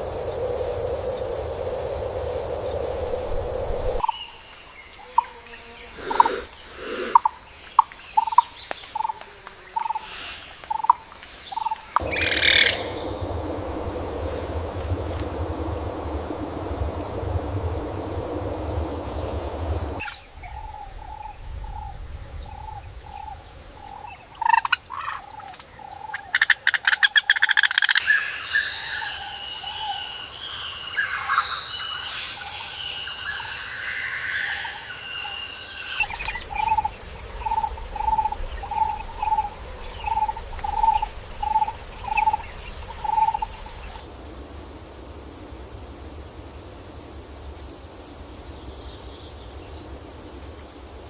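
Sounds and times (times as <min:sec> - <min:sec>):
high insect drone: 0:00.0 - 0:51.0
birds chirping: 0:09.7 - 0:24.2, 0:35.9 - 0:44.0.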